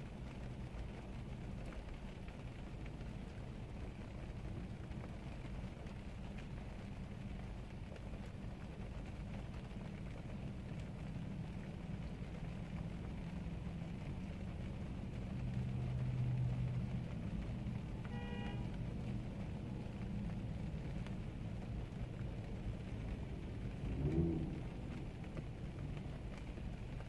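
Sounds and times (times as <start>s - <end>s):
vehicle engine rumble: 0.0s - 27.0s.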